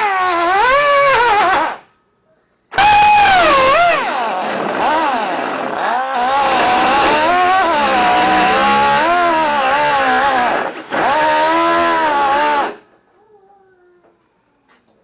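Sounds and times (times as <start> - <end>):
cutoff wheel cutting sheet steel: 2.8 - 12.8.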